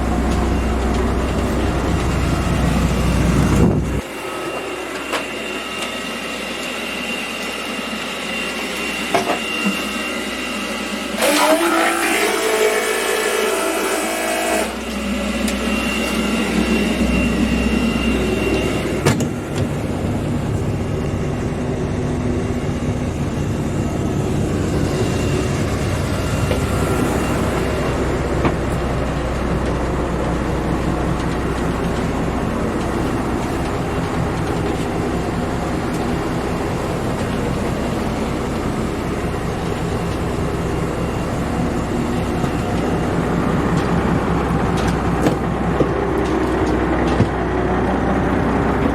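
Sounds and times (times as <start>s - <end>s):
boat engine running: 0.0s - 4.6s, 14.7s - 48.9s.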